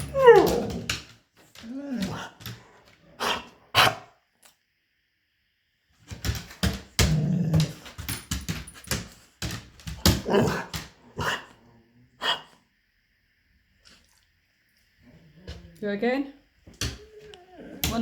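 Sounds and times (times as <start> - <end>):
dog coughing: 3.2 - 4.1.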